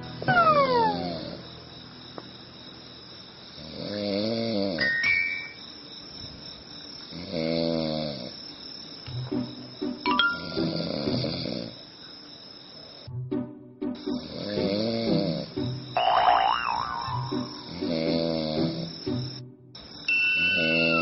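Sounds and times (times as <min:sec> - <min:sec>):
man snoring: 0:03.6 - 0:04.8, 0:07.1 - 0:08.4, 0:10.4 - 0:11.8, 0:14.2 - 0:15.6, 0:17.6 - 0:19.0.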